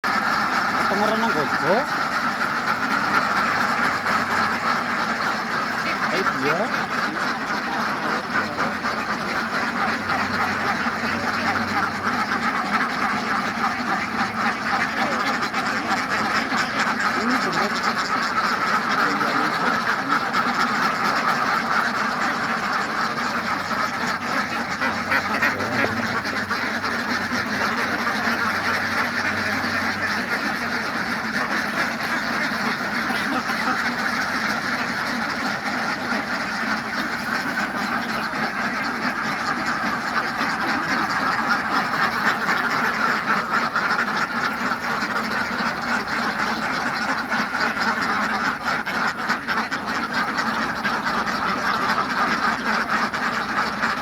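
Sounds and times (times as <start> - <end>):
ducks quacking: 0.0 - 54.0.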